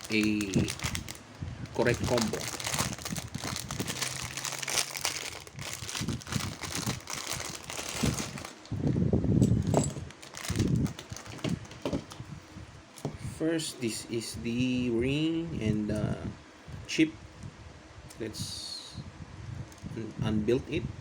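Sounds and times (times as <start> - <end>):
plastic bag crinkling: 0.0 - 8.8, 9.6 - 12.2.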